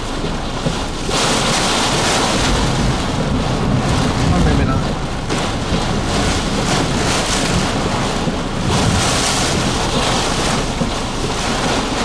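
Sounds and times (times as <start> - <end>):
wind buffeting a car: 0.0 - 12.0.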